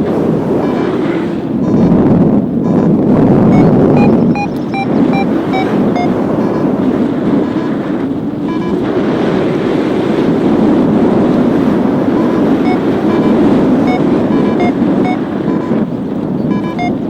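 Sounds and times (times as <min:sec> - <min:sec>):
wind rushing over microphone: 0:00.0 - 0:17.0
short high beeps: 0:00.6 - 0:00.9, 0:02.6 - 0:06.8, 0:08.4 - 0:08.8, 0:12.1 - 0:15.8, 0:16.5 - 0:17.0.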